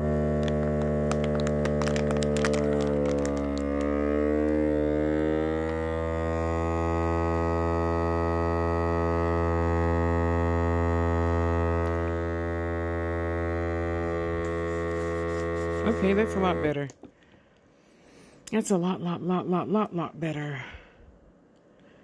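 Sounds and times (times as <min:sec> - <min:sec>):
vacuum sealer pump humming: 0:00.0 - 0:17.5.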